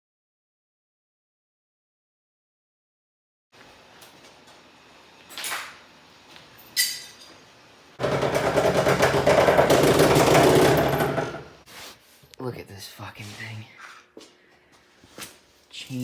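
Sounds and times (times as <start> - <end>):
power tool running: 8.0 - 11.6.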